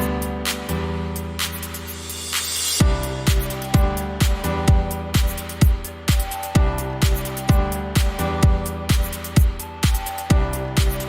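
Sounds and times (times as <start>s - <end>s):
electronic music: 0.0s - 11.0s
hi-hats: 0.0s - 11.0s
held synth chords: 2.1s - 11.0s
kick drum: 2.8s - 11.0s.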